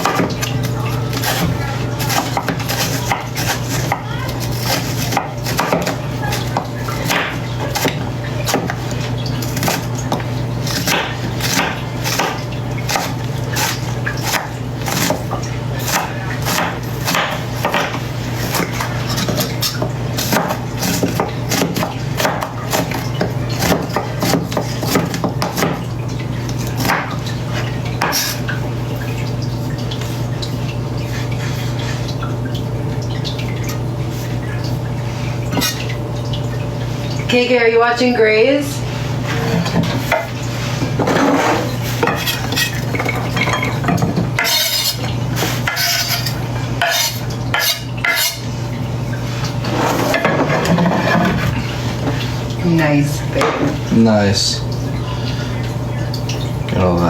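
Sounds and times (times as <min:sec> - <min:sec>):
knife chopping on cutting board: 0:01.1 - 0:08.8, 0:10.7 - 0:23.0, 0:23.6 - 0:25.8, 0:44.0 - 0:48.4.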